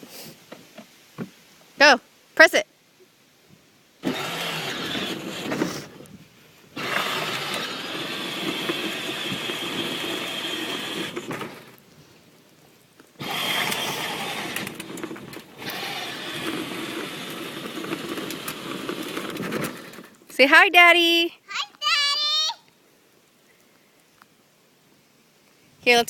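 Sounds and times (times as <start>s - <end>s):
toy car motor and gearbox running: 4.0s - 6.0s, 6.7s - 11.8s, 13.2s - 20.2s.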